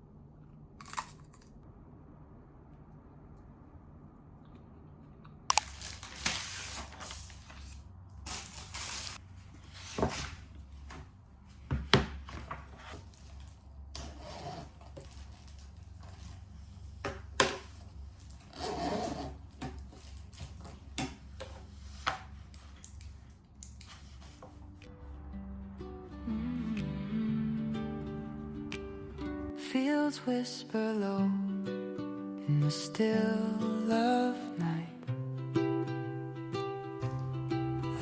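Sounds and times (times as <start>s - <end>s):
steady low hum: 0.0s - 6.0s.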